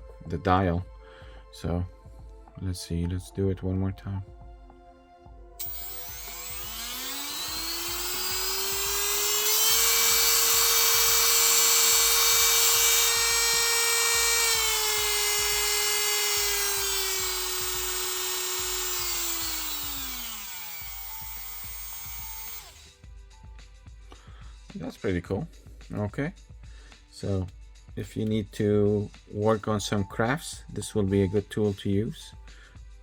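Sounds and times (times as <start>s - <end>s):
rotary tool motor whine: 5.6s - 22.9s.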